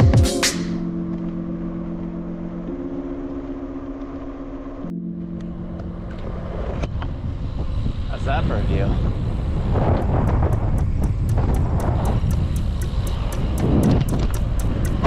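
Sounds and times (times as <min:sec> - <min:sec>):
electronic drum beat: 0:00.0 - 0:00.8, 0:10.1 - 0:15.0
sustained synth chords: 0:00.0 - 0:15.0.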